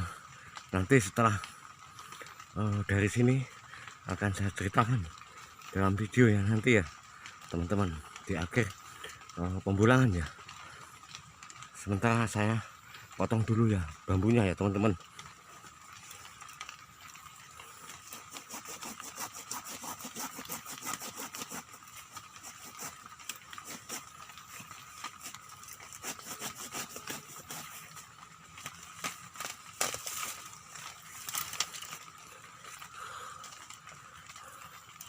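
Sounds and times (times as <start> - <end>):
blade cutting bamboo: 17.8 - 32.1.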